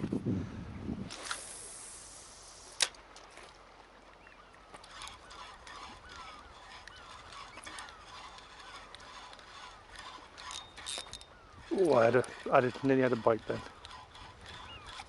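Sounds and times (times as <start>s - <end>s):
light hiss: 1.1s - 3.4s
birds honking: 4.2s - 15.0s.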